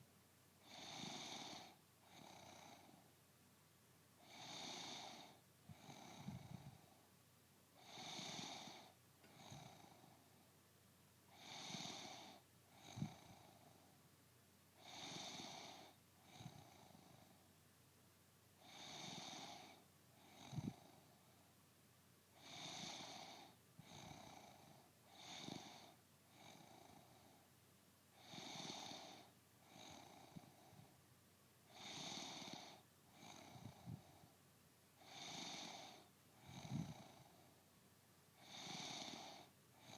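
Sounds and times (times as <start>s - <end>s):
woman snoring: 0.6s - 2.8s, 4.3s - 6.6s, 7.8s - 9.9s, 11.4s - 13.4s, 14.8s - 16.7s, 18.6s - 19.8s, 22.4s - 24.6s, 25.2s - 25.9s, 28.2s - 30.5s, 31.8s - 33.8s, 35.0s - 37.2s, 38.4s - 39.9s
soft breath: 4.2s - 7.0s, 28.2s - 31.0s, 31.7s - 34.4s, 35.0s - 37.7s, 38.4s - 39.9s.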